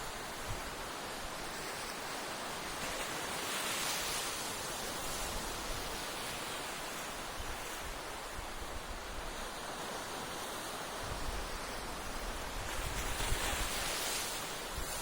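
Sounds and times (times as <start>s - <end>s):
wind rumble on microphone: 0.0s - 1.6s, 11.0s - 15.0s
sea waves washing onto beach: 0.0s - 15.0s.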